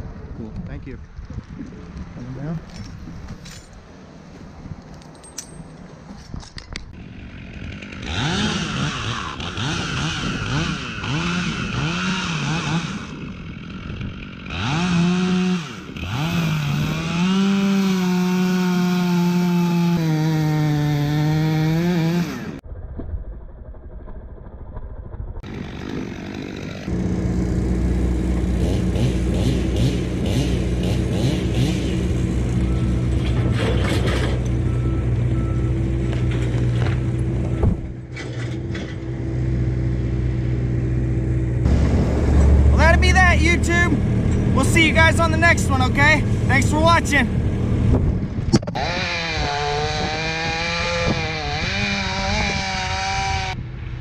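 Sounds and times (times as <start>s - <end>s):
engine running at low pitch: 0.0s - 17.7s, 21.8s - 54.0s
chainsaw revving while cutting: 7.0s - 22.6s, 25.4s - 32.6s, 48.7s - 53.6s.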